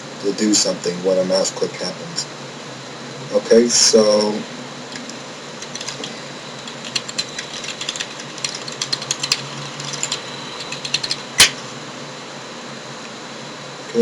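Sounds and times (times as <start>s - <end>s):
typing on computer keyboard: 5.0s - 11.2s.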